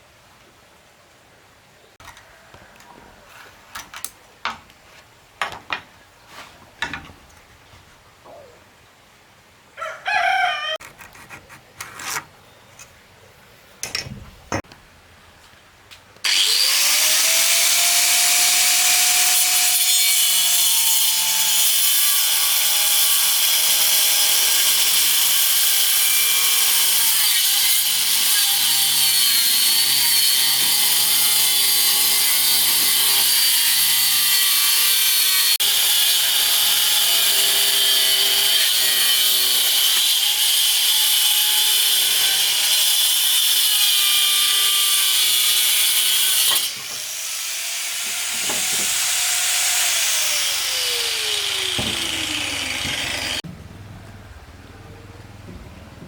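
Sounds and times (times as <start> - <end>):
power saw cutting wood: 16.2 - 53.4.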